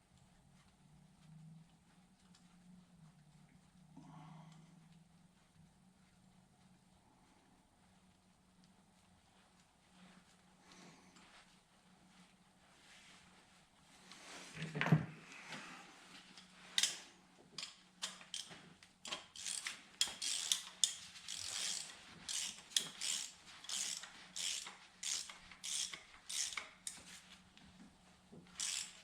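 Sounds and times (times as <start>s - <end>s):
ratchet wrench clicking: 16.8s - 17.0s, 17.6s - 27.0s, 28.5s - 29.0s.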